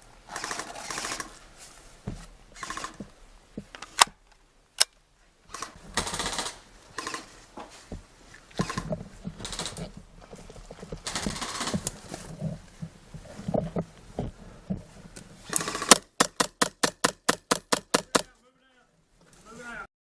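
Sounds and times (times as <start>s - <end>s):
airsoft gun rapid fire: 0.3s - 1.3s, 2.6s - 3.0s, 5.5s - 7.3s, 8.6s - 9.8s, 11.0s - 11.8s, 15.5s - 18.3s
rustling and knocking: 0.5s - 3.9s, 7.3s - 15.2s.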